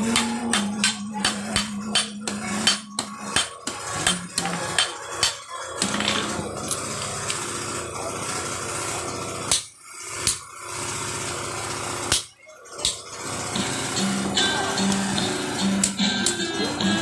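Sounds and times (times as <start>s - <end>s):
hammer striking metal: 0.0s - 6.4s.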